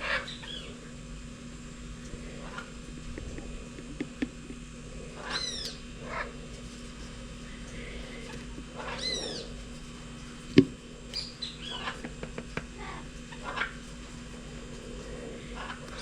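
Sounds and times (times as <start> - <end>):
short arching bird calls: 0.0 - 0.9, 2.2 - 6.4, 7.0 - 9.6, 11.1 - 14.0.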